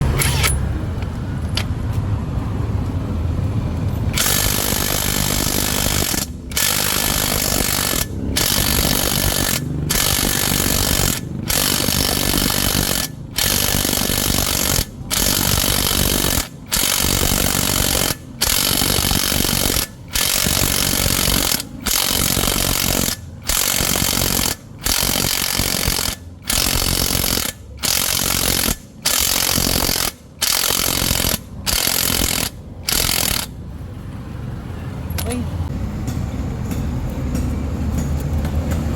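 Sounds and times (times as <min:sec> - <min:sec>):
impact wrench hammering: 0:04.1 - 0:33.5.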